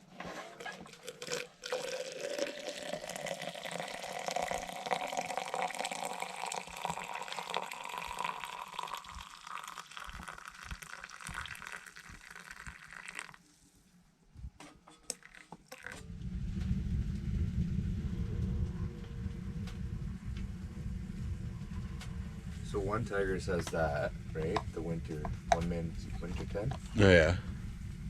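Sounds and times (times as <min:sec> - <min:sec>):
liquid pouring into container: 0:00.6 - 0:13.4, 0:15.1 - 0:16.0.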